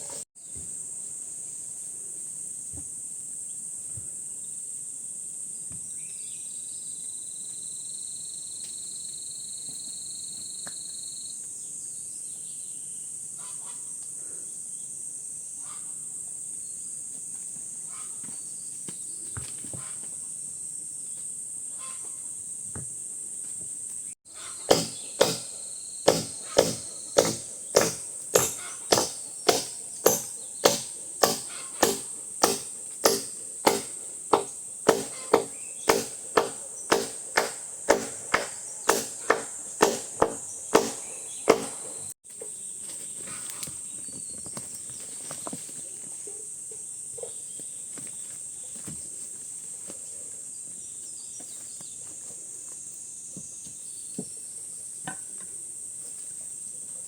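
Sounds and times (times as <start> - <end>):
insects chirring: 0.0 - 57.0
tool striking rhythmically: 24.5 - 42.2.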